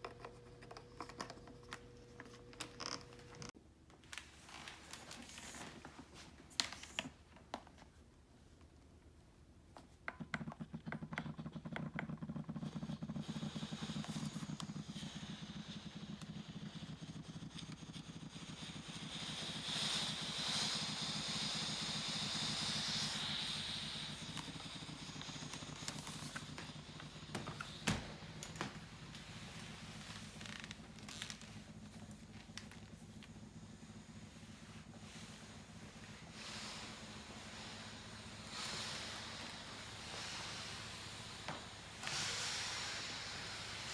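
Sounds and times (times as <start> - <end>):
vacuum cleaner running: 11.8 - 43.9.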